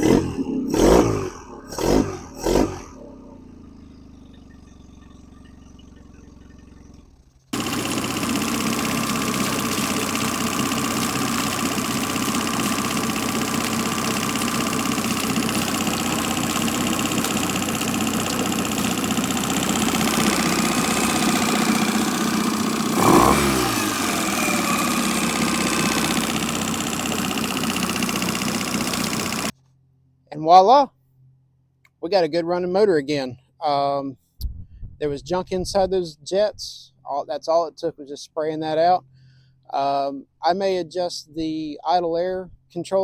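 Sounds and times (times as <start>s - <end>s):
outboard motor running: 0.8s - 29.5s.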